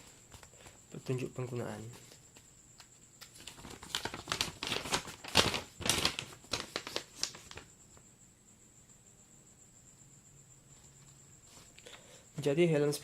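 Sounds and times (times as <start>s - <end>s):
packaging crinkling: 3.2s - 7.7s.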